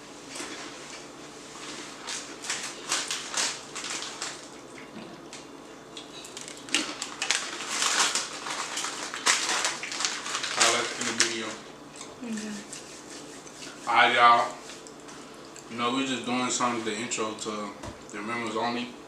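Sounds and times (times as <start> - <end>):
crunchy snacks being chewed: 2.0 - 12.2.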